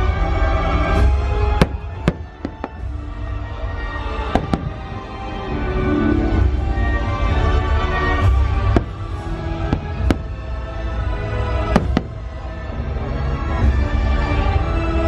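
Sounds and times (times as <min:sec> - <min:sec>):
firework bangs: 0:01.0 - 0:05.5, 0:08.2 - 0:12.7.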